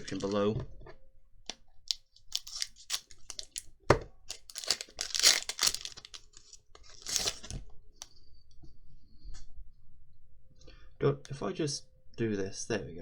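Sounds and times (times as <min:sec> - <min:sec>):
foil wrapper tearing and crinkling: 0:01.9 - 0:03.7, 0:04.3 - 0:07.6.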